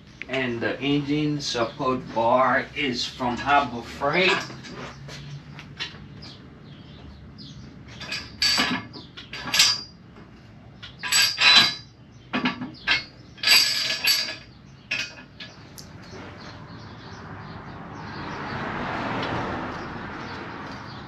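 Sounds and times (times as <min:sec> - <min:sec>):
metal tools clinking and clanking: 0:03.3 - 0:05.0, 0:07.9 - 0:10.0, 0:10.8 - 0:16.3.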